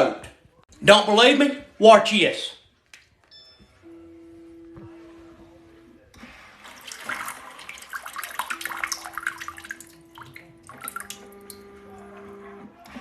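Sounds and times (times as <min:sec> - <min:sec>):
water spraying into toilet bowl: 0:06.2 - 0:11.6.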